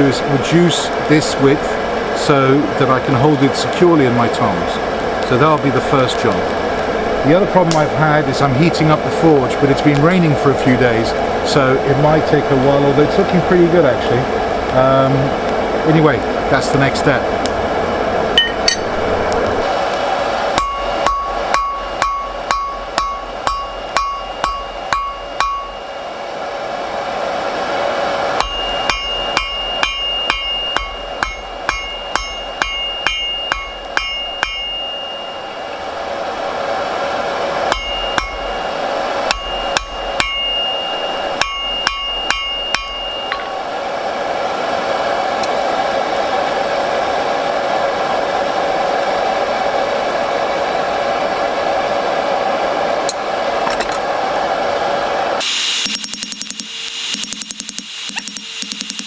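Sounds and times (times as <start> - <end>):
anvil ringing: 18.4 - 18.9, 20.6 - 26.2, 28.4 - 35.9, 37.7 - 43.6, 55.4 - 59.0
hammer striking steel on anvil: 18.4 - 18.9, 20.5 - 26.0, 28.4 - 35.9, 37.7 - 43.6, 55.4 - 59.0.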